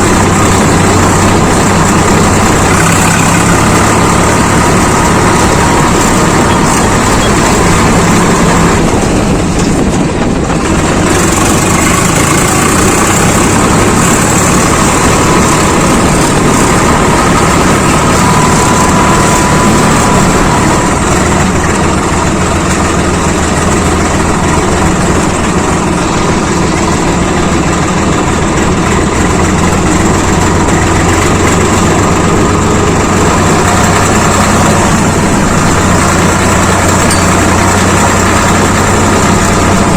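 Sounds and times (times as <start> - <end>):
tractor diesel engine running: 0.0 - 39.9.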